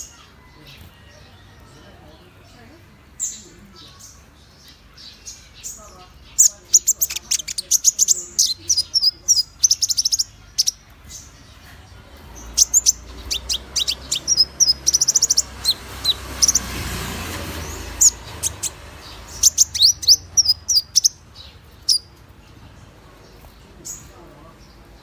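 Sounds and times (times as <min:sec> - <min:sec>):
songbird chirps and trills: 0:00.0 - 0:25.0
soft rushing noise: 0:11.1 - 0:24.6.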